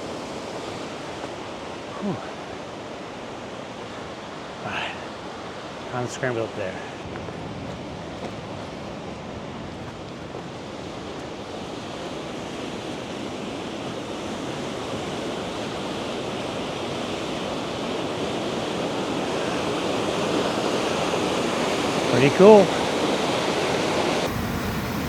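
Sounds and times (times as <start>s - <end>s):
waterfall rushing: 4.3s - 7.0s, 13.8s - 25.0s.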